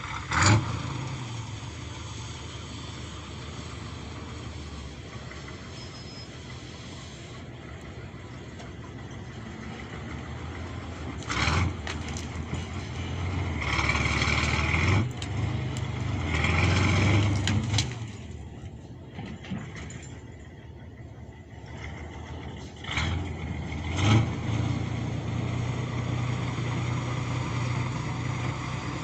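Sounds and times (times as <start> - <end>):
tractor diesel engine running: 0.0 - 29.0.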